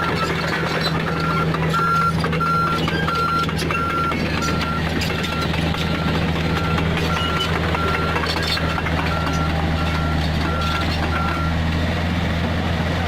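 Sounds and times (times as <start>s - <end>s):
excavator diesel engine running: 0.0s - 13.0s
travel alarm beeping: 1.2s - 11.5s.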